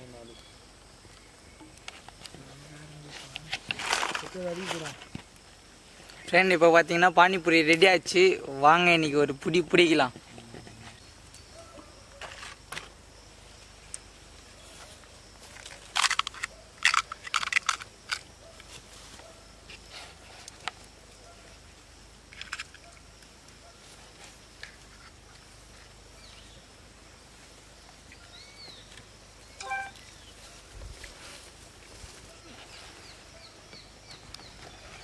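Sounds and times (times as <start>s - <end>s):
fried shells crackling and crunching: 15.5s - 18.3s
short chirping call: 29.6s - 30.1s.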